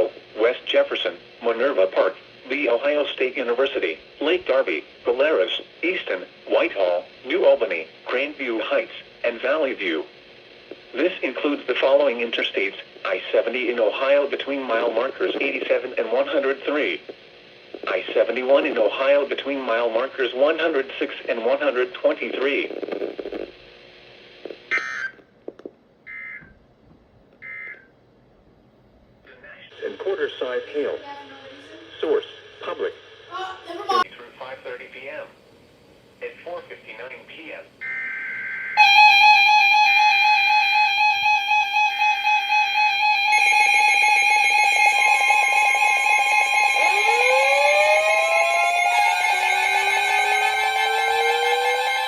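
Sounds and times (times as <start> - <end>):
rising sweeping tones: 44.2 - 52.0
pulsing alert tone: 46.2 - 52.0.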